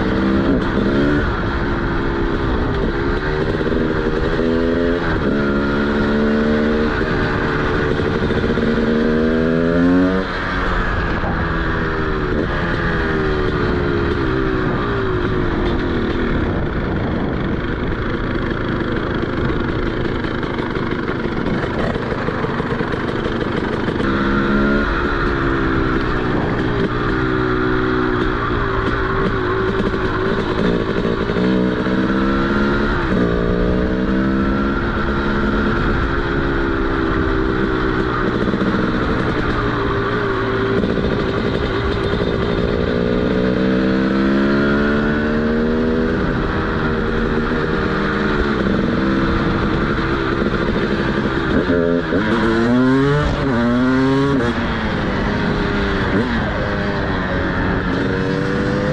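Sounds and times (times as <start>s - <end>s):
two-stroke motorcycle engine revving: 0.0s - 58.9s.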